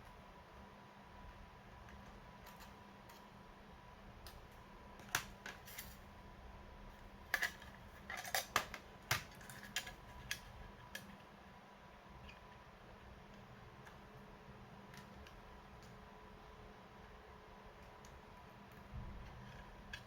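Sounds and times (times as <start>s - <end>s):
faint steady hum: 0.0s - 20.0s
clicks of laptop parts handled: 7.4s - 11.1s.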